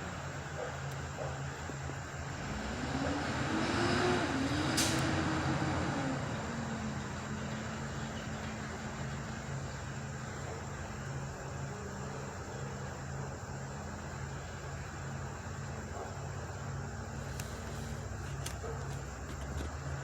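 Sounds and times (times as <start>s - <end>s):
vehicle engine revving: 0.0s - 10.4s.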